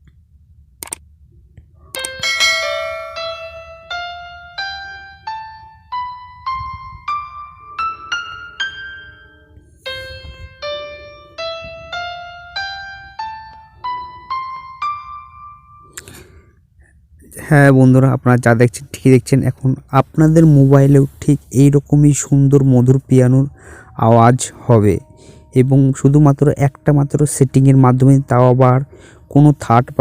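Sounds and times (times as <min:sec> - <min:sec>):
single piano notes: 0:02.0 - 0:16.1.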